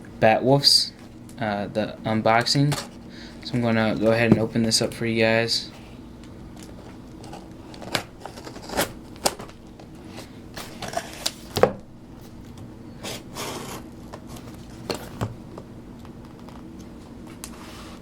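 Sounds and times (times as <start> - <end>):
package clicks and scrapes: 6.6 - 9.6.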